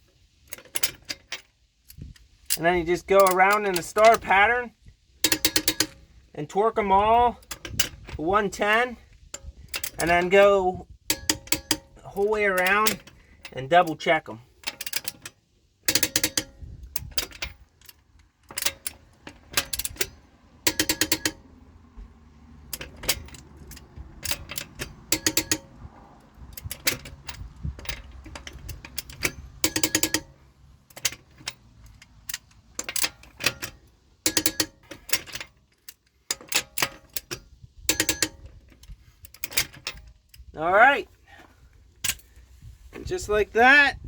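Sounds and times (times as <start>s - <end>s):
torque wrench metallic clicks: 0.4s - 4.6s, 5.2s - 21.7s, 22.6s - 40.6s
torque wrench ratcheting: 5.2s - 6.0s, 14.7s - 21.6s, 22.6s - 25.8s, 26.5s - 35.1s.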